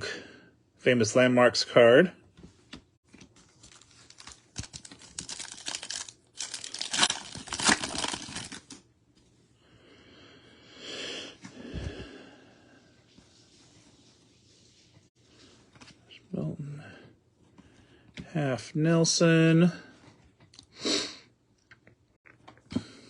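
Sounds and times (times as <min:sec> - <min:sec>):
foil wrapper tearing and crinkling: 0:03.5 - 0:08.8
soft rustle of handling: 0:12.9 - 0:16.3.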